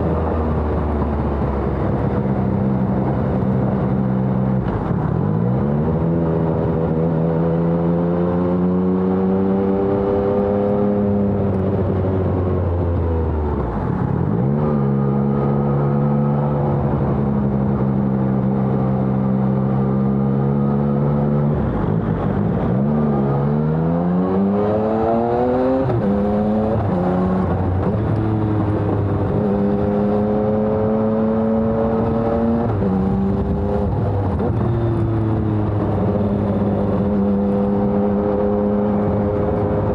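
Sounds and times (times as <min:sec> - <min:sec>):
motorcycle engine revving: 0:13.8 - 0:39.9.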